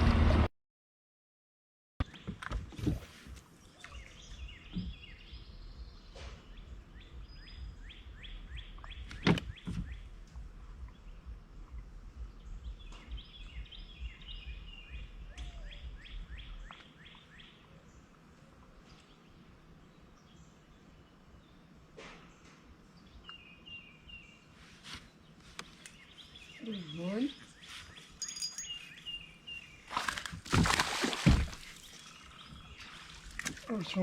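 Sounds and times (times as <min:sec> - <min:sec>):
bird chirping: 0:03.5 - 0:30.4, 0:31.3 - 0:34.0
low steady rumble: 0:04.0 - 0:16.7.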